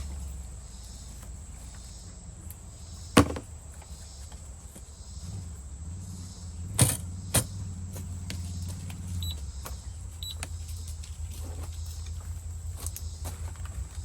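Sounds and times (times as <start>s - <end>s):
sharp knocks: 3.2s - 3.5s
high electronic beeps: 9.2s - 9.4s.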